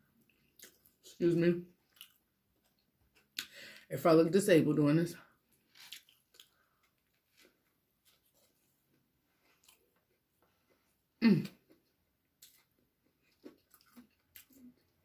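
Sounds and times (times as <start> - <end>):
chewing: 0.2 - 1.2, 1.8 - 3.5, 5.6 - 10.9, 11.6 - 15.0.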